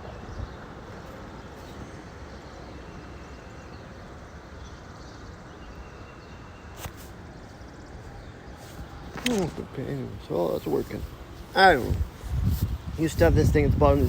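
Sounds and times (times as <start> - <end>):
sharp click: 6.8 - 7.1, 9.1 - 9.6
wind buffeting microphone: 7.7 - 14.0.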